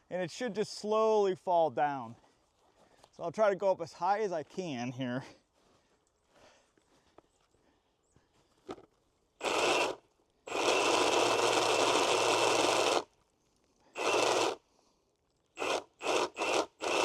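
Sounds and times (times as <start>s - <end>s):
pole saw whining: 9.4s - 13.1s, 14.0s - 14.6s, 15.6s - 17.0s.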